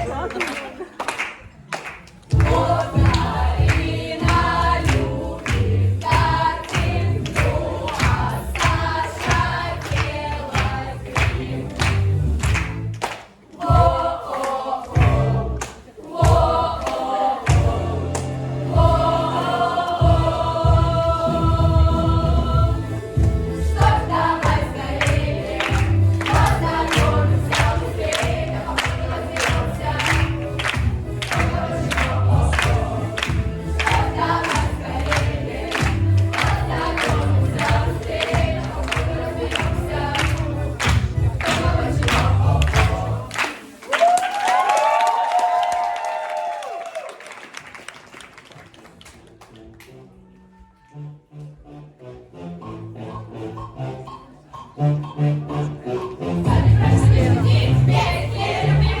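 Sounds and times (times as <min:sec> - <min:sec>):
steady beat: 0:02.3 - 0:12.8, 0:18.6 - 0:43.3
voices singing together: 0:02.3 - 0:12.8, 0:13.5 - 0:43.8, 0:52.4 - 0:59.0.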